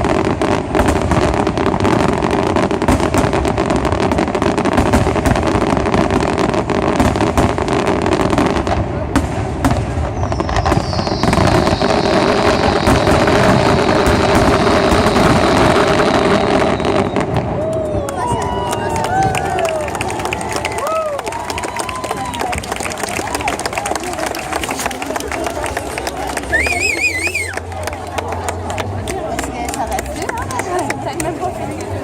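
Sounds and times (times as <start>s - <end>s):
fireworks bangs and crackling: 0.0s - 32.0s
high whistle: 10.2s - 13.4s, 26.5s - 27.6s.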